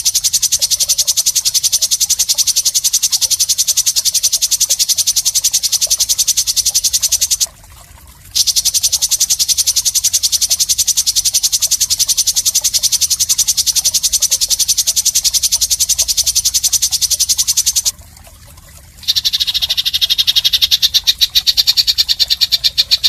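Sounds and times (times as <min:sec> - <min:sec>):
rapid high-pitched animal call: 0:00.0 - 0:07.5, 0:08.4 - 0:17.9, 0:19.0 - 0:23.0.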